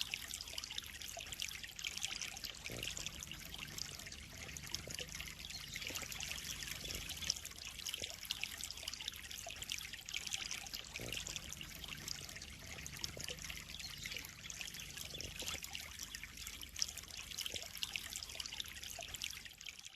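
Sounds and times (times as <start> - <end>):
water splashing into pond: 0.0 - 19.9.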